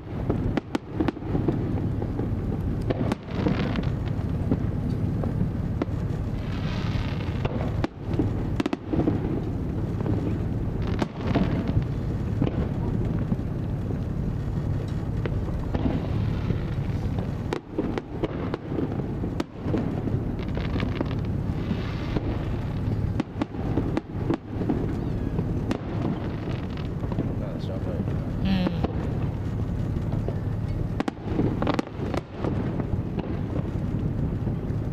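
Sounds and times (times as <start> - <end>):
fireworks crackling: 0.0 - 34.9
low rumble: 1.2 - 34.9.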